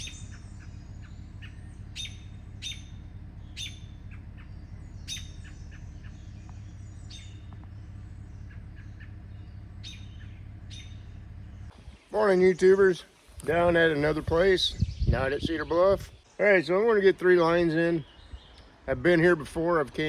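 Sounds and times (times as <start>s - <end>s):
birds chirping: 0.0s - 20.0s
steady low rumble: 0.0s - 20.0s.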